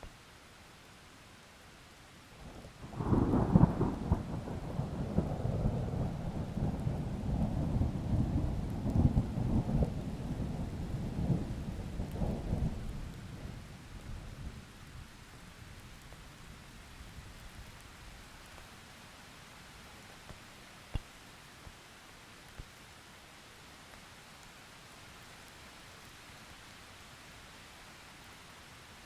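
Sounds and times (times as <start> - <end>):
steady rain: 0.0 - 29.0
thunder clap and rumble: 2.8 - 14.6.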